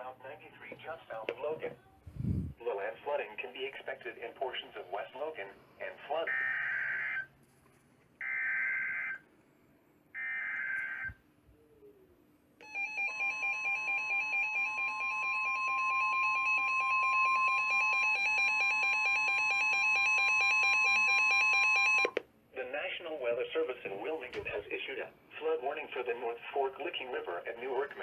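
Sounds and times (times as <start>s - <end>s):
steady alarm tone: 6.3s - 7.3s, 12.6s - 22.2s.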